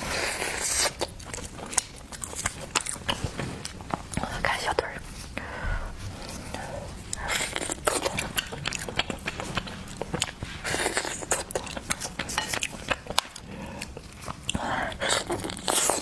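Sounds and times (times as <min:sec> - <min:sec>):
wet chewing: 0:00.0 - 0:04.4, 0:06.2 - 0:16.0
lip smacks and sucking: 0:00.1 - 0:04.3.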